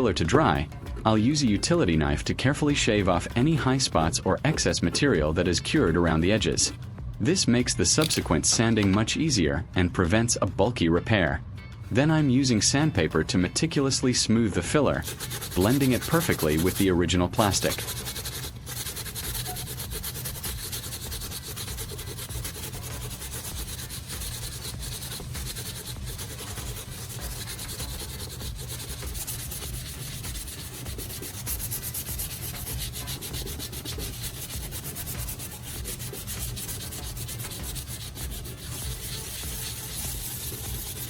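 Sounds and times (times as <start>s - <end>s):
sandpaper rasping on filler: 14.9s - 41.0s.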